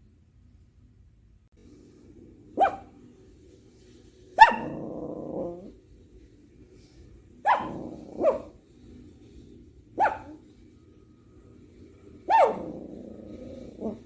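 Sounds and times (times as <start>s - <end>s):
dog barking: 2.6s - 3.0s, 4.4s - 5.7s, 7.4s - 8.6s, 9.9s - 10.5s, 12.2s - 14.0s.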